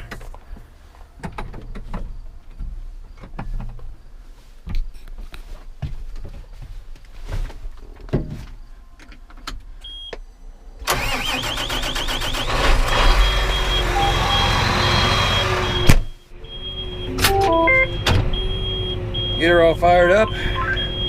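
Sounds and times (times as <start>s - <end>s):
tractor diesel engine starting: 10.8s - 21.0s
warning beeps: 13.1s - 21.0s.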